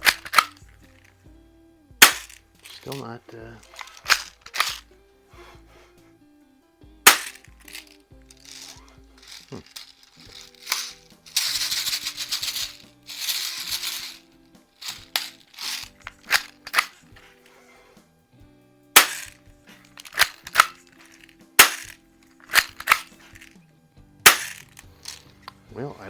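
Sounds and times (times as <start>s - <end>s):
bbs rattling in pistol: 0.0s - 1.1s, 2.0s - 4.9s, 7.0s - 17.8s, 19.0s - 23.6s, 24.2s - 25.6s
background music: 0.0s - 26.0s.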